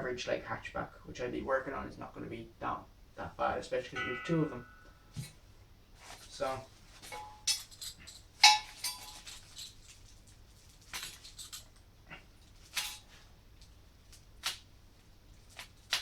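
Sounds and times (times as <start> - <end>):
metal parts clinking: 6.4 - 13.2.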